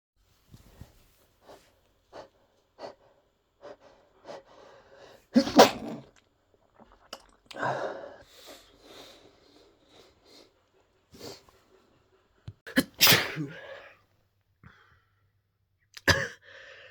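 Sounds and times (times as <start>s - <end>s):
person sneezing: 5.4s - 6.1s, 12.7s - 14.0s
short breaths: 16.4s - 16.9s.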